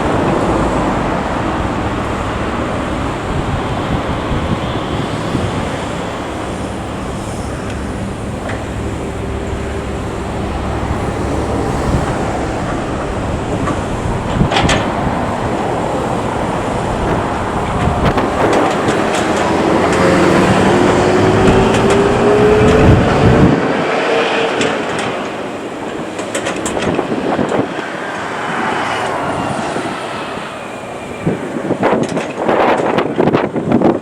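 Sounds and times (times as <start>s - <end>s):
rising whine: 0.0s - 32.7s
excavator diesel engine running: 0.0s - 34.0s
sharp metallic knocks: 10.8s - 27.9s
metal clanks: 10.9s - 23.4s.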